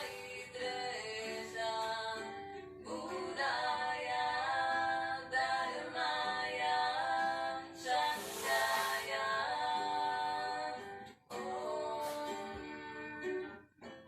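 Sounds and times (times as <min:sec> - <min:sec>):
person singing long notes: 0:07.0 - 0:13.6.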